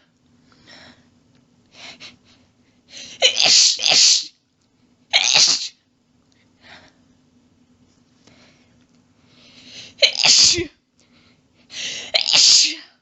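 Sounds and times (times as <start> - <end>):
person sneezing: 3.2 - 4.4, 5.2 - 5.8, 10.0 - 10.8, 12.0 - 13.0
faint breaths in: 8.2 - 10.0, 11.0 - 12.1.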